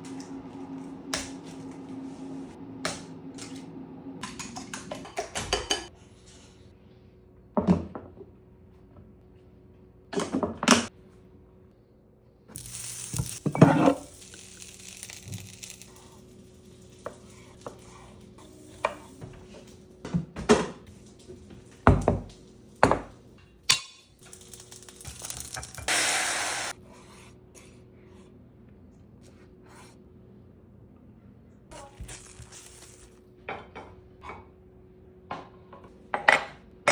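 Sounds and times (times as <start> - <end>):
food sizzling in a frying pan: 12.5 - 17.8, 24.2 - 26.7
pans and utensils clattering: 13.2 - 15.8.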